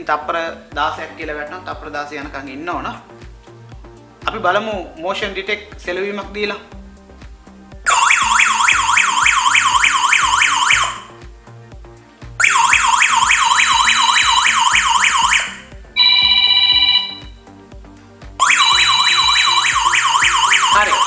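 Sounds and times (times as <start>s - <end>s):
warbling alarm siren: 7.9s - 11.2s, 12.4s - 17.4s, 18.4s - 21.0s
short steady beep: 12.4s - 17.4s, 18.4s - 21.0s.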